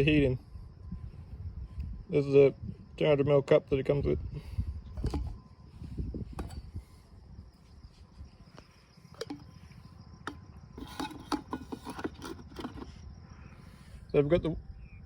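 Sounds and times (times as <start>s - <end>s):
low steady rumble: 0.0s - 10.8s
plastic coffee maker parts clicking: 5.0s - 5.4s, 9.1s - 9.6s, 10.3s - 12.9s.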